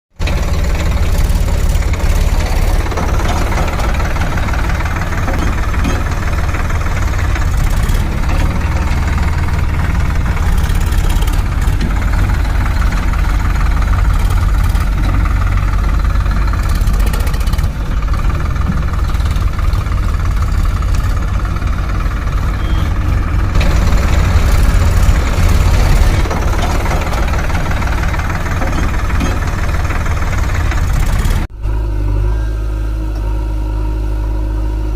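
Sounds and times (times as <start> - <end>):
diesel engine knocking clatter: 0.1 - 31.5.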